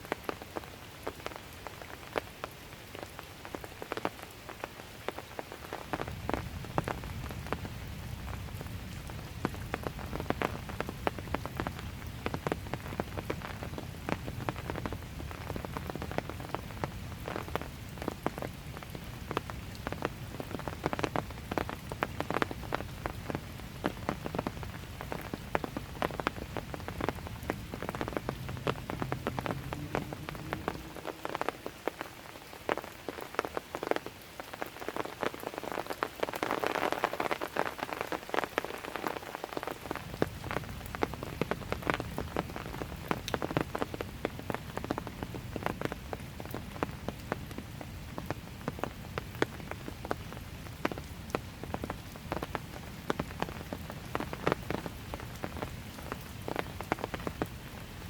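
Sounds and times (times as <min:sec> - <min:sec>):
light rain drops tapping: 0:00.0 - 0:58.0
low rumble: 0:28.3 - 0:31.6.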